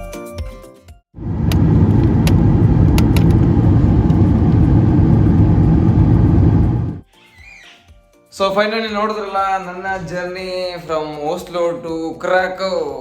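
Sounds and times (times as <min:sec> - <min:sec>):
vehicle rumbling in motion: 0:01.2 - 0:07.0.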